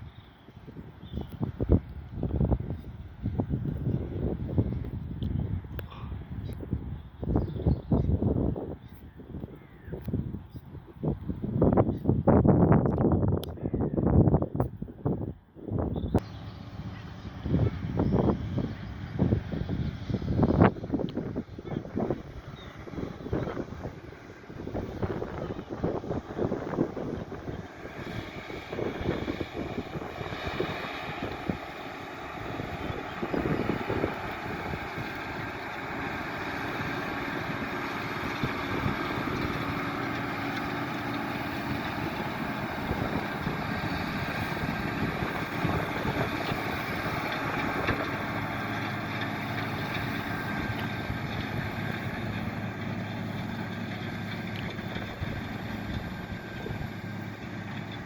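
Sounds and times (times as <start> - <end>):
wind buffeting microphone: 0.0 - 58.0
tractor engine under load: 16.0 - 58.0.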